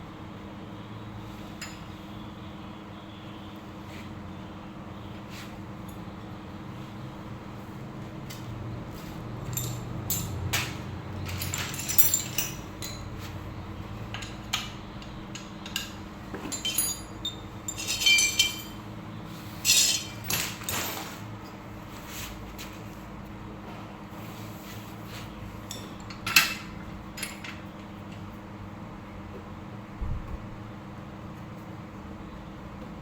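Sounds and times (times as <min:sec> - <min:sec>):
faint steady hum: 0:00.0 - 0:33.0
metal parts clinking: 0:09.4 - 0:13.2, 0:14.1 - 0:18.8, 0:19.6 - 0:21.6.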